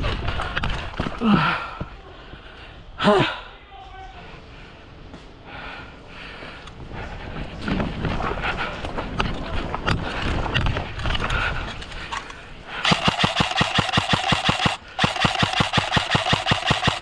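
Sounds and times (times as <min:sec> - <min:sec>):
airsoft rifle rapid fire: 0:12.8 - 0:17.0.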